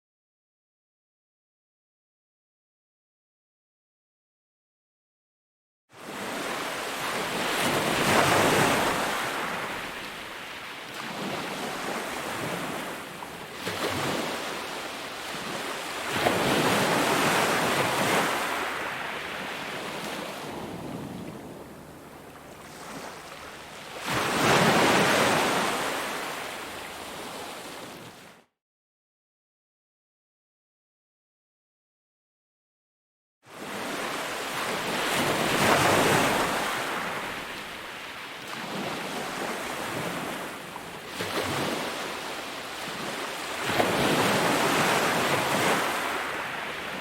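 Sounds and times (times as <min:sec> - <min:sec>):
ocean waves breaking: 0:06.0 - 0:28.3, 0:33.5 - 0:47.0.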